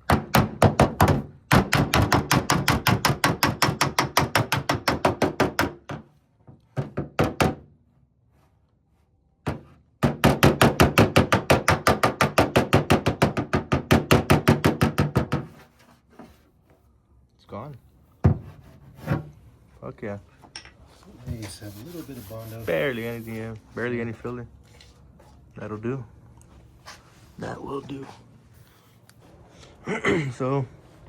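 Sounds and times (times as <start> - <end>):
rapid sanding strokes: 21.4 - 23.6.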